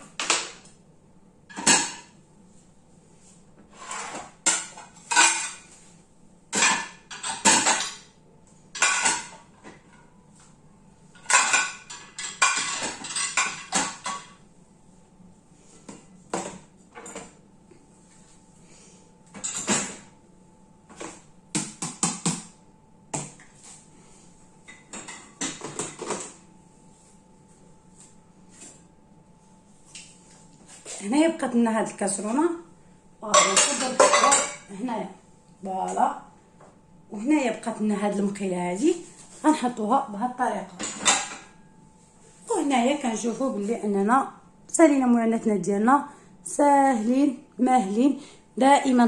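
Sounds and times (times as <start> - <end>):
dishes and pans clattering: 1.5 - 2.2, 3.7 - 5.8, 6.5 - 8.1, 8.7 - 10.1, 11.1 - 14.4, 19.4 - 20.1, 24.7 - 26.4, 33.3 - 34.7, 40.8 - 41.6.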